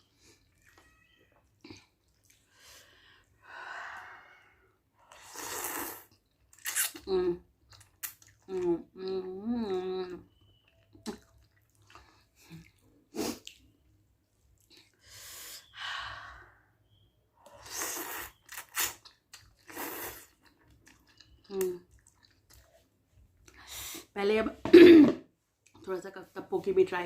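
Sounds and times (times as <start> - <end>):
chewing and wet mouth sounds: 0.0 - 2.6, 6.0 - 13.8, 17.5 - 23.6.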